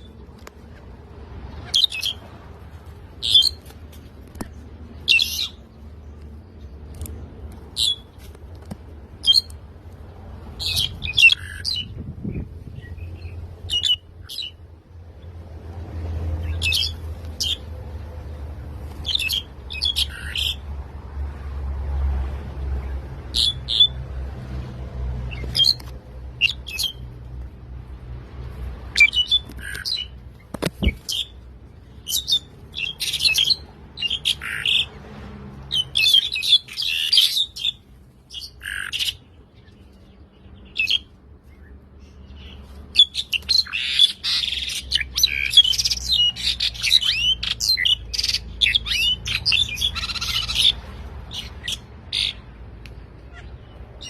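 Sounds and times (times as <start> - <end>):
birds chirping and squawking: 0.0 - 2.4, 3.0 - 3.8, 4.4 - 8.2, 10.4 - 14.6, 16.4 - 17.8, 18.9 - 20.7, 23.3 - 24.0, 25.3 - 27.1, 28.8 - 54.0.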